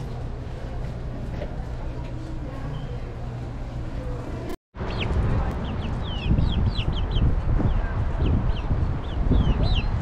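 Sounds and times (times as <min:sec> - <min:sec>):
birds chirping and peeping: 0:04.8 - 0:10.0.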